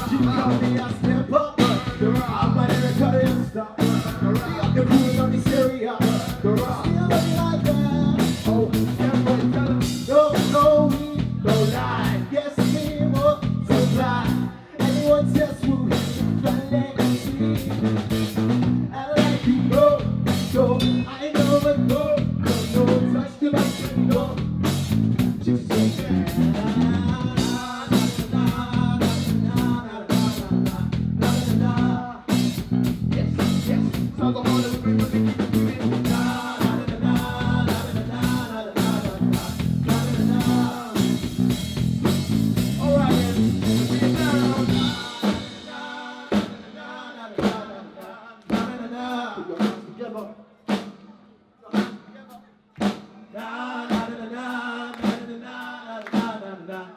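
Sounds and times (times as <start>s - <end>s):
steady drum beat: 0.0s - 47.7s
live band music: 1.6s - 22.9s, 23.6s - 45.8s.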